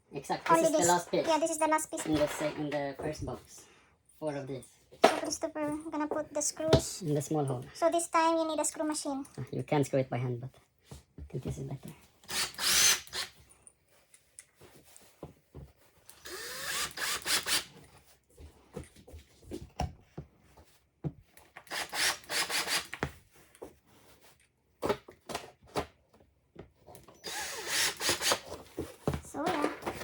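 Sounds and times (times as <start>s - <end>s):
cordless screwdriver driving screws: 12.3s - 13.4s, 16.2s - 17.7s, 27.2s - 28.5s.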